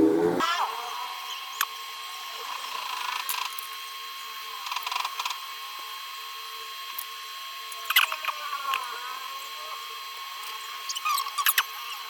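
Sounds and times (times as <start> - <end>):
steady high whine: 0.0 - 0.5.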